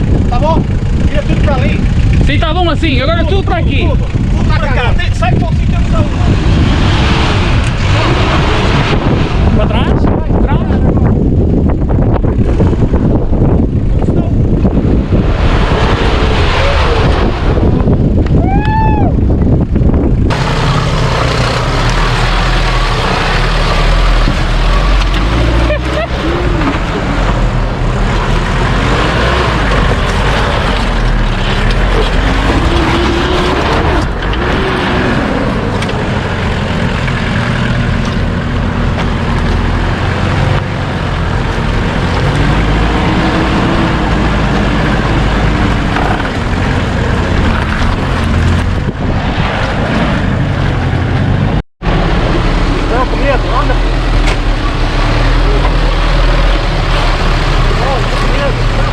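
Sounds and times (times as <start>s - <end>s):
off-road vehicle engine revving: 0.0s - 18.4s, 19.4s - 58.9s.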